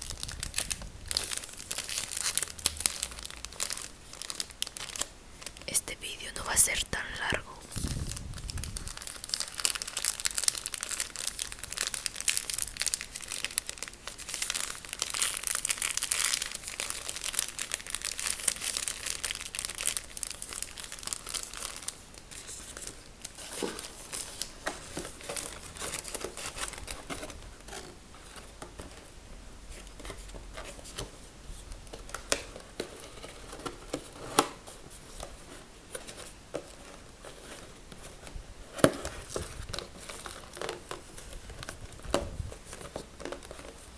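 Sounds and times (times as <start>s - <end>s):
packaging crinkling and tearing: 0.0s - 5.7s, 7.0s - 31.2s, 31.8s - 43.9s.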